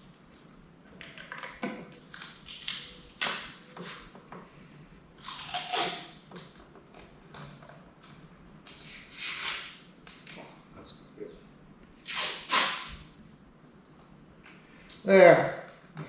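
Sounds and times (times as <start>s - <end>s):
tape pulled and torn: 5.2s - 6.2s, 8.7s - 10.4s, 12.0s - 13.0s.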